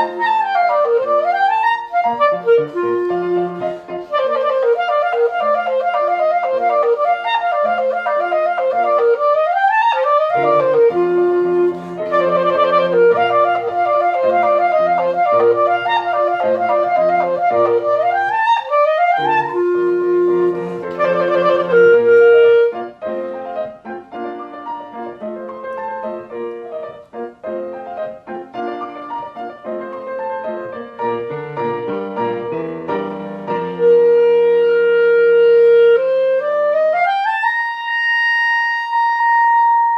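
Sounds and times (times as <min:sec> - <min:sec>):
clarinet playing fast passage: 0:00.0 - 0:39.9
piano accompaniment: 0:00.0 - 0:39.9.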